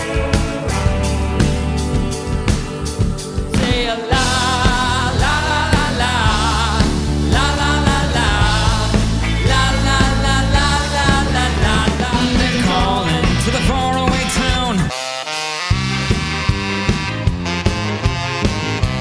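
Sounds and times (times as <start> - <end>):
rock band playing: 0.0 - 19.0
person singing lead vocal: 3.3 - 15.0.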